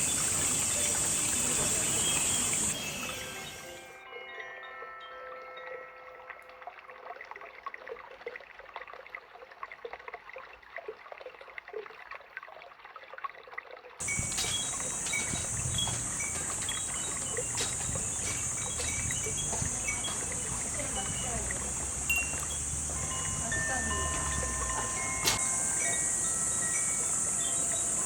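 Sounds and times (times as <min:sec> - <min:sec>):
steady high hiss: 0:00.0 - 0:04.0, 0:14.0 - 0:28.0
glass wind bells tinkling: 0:00.0 - 0:06.6, 0:14.0 - 0:28.0
water trickling: 0:00.0 - 0:28.0.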